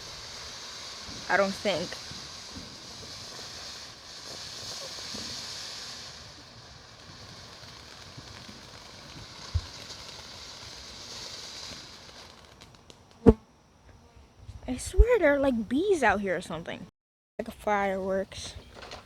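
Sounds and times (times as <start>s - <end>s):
firework fountain hissing: 0.0s - 13.2s.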